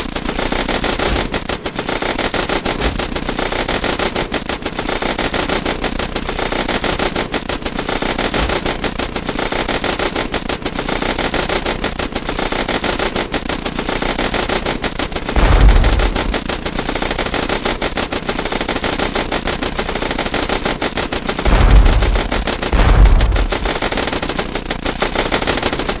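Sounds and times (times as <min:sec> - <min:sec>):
heavy low booms: 0:15.4 - 0:16.7, 0:21.5 - 0:24.1
automatic rifle fire: 0:15.4 - 0:16.8, 0:21.5 - 0:24.3.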